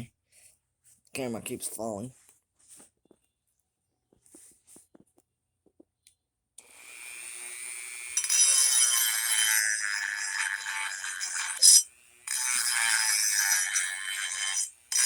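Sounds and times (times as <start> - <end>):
rotary tool motor whine: 6.6 - 15.0
grinding on steel blade: 6.8 - 15.0.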